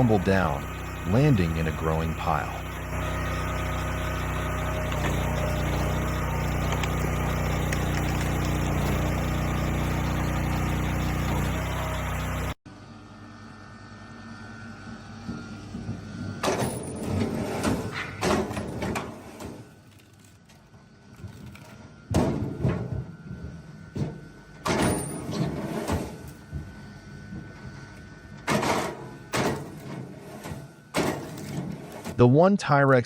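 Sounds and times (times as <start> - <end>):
log splitter humming: 0.0 - 12.6
wood splitting and knocking: 4.4 - 11.6.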